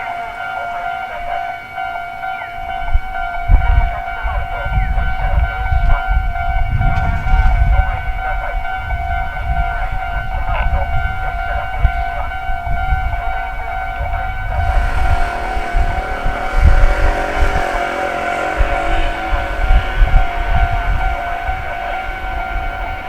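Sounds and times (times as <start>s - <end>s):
railroad crossing alarm bell: 0.0s - 23.0s
low rumble: 14.6s - 23.0s.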